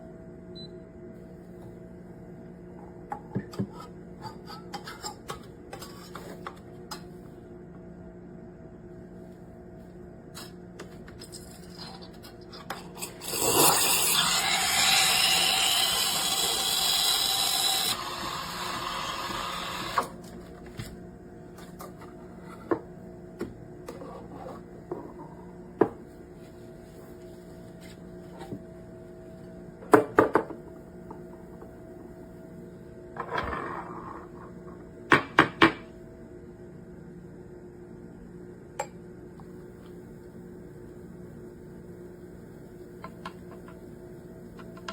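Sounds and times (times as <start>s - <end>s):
steam wand hissing: 13.3s - 20.0s.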